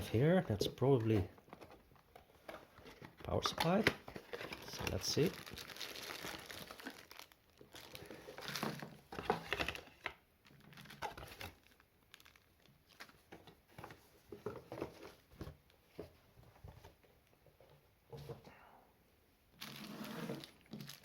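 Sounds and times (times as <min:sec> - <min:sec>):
plastic packaging crinkling: 0:02.8 - 0:13.3, 0:19.6 - 0:21.0.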